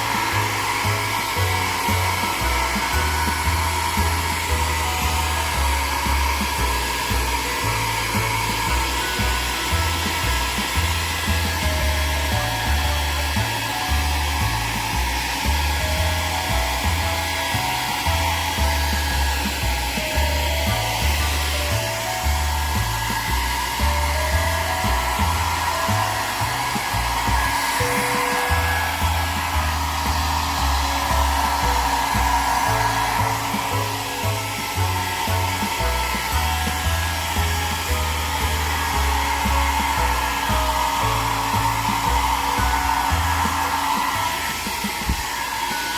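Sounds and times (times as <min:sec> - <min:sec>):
background music with bass line: 0:00.0 - 0:45.7
hair dryer blowing: 0:00.0 - 0:45.9.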